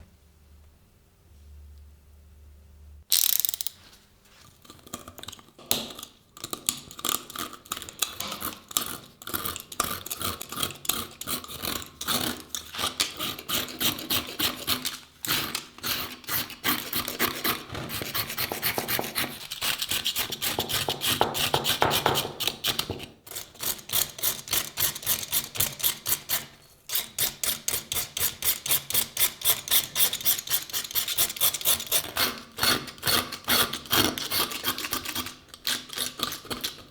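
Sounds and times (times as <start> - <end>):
scraping rust off metal blade: 7.3 - 20.4.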